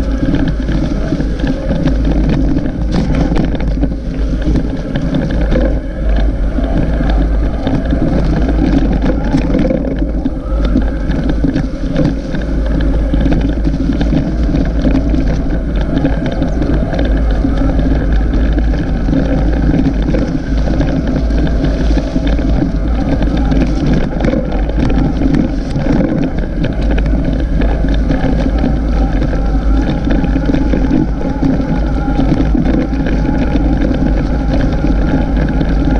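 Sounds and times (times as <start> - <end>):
rattling road noise: 0.0 - 35.9
wind buffeting microphone: 0.0 - 35.9.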